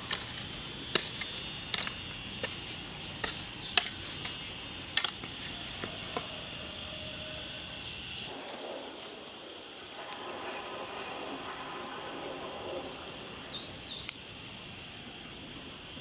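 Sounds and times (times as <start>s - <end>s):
high-pitched insect drone: 4.4s - 16.0s.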